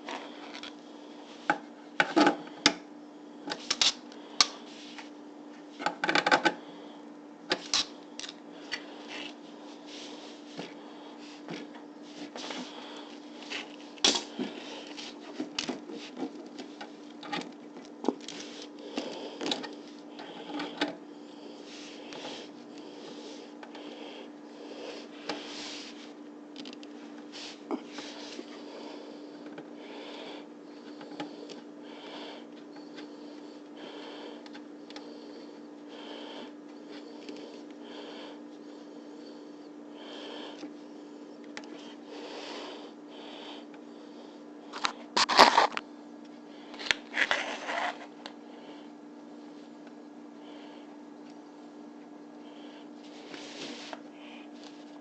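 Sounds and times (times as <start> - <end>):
steady low hum: 0.0 - 55.0
rubbing and handling noises: 7.5 - 20.8, 21.5 - 26.2, 26.8 - 29.7, 44.7 - 45.8, 46.8 - 48.2, 53.0 - 55.0.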